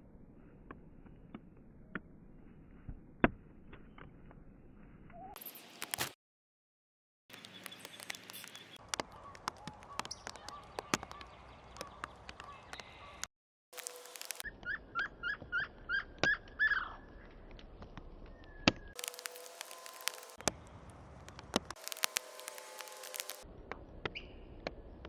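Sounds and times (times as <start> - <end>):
bird chirping: 7.3 - 13.3, 14.4 - 17.3, 24.1 - 24.6
sharp clicks and taps: 7.3 - 13.3.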